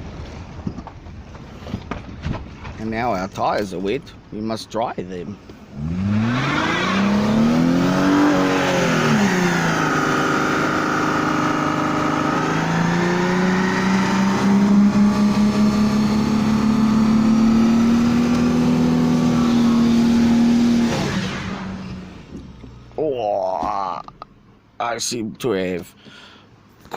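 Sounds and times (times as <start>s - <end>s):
car engine revving: 5.7s - 23.0s.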